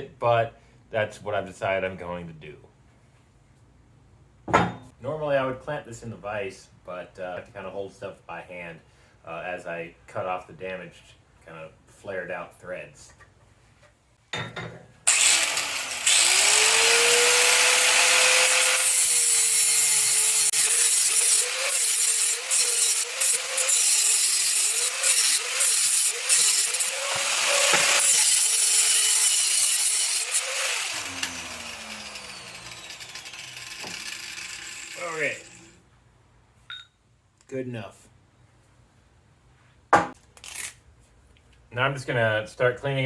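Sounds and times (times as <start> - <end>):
power tool grinding through steel: 15.1 - 35.8.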